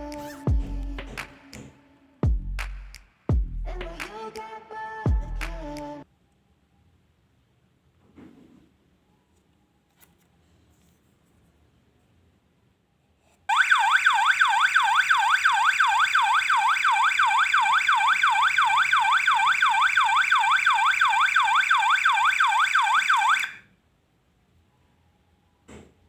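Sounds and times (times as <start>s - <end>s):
warbling electronic alarm siren: 13.5s - 23.6s.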